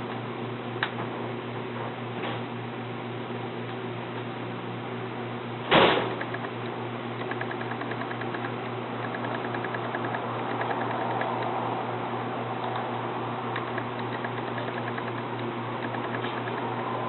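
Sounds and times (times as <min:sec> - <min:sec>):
low electrical hum: 0:00.0 - 0:17.0
faint rapid ticking: 0:07.2 - 0:11.5, 0:13.6 - 0:16.7.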